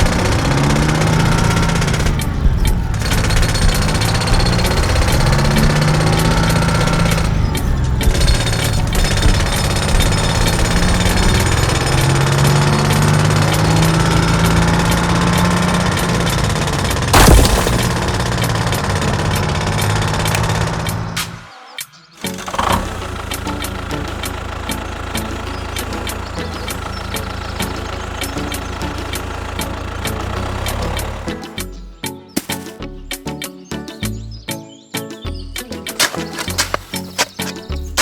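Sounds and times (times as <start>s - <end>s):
rapid mechanical rattling: 0.0s - 21.2s, 22.2s - 31.4s
humming motor: 0.0s - 21.3s, 22.2s - 31.5s.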